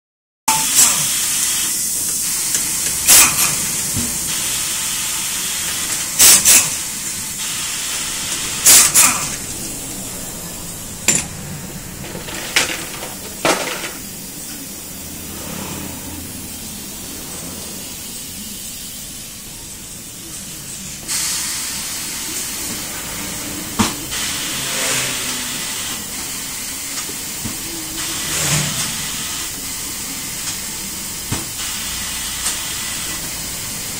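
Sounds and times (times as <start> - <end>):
sharp air blasts: 0.5 - 12.0, 12.9 - 33.9
compressed air hissing: 0.5 - 33.9.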